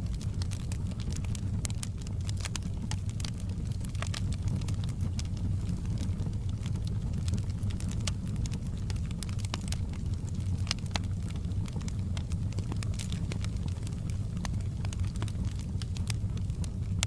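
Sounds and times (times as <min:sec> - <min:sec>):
fire crackling and popping: 0:00.0 - 0:17.0.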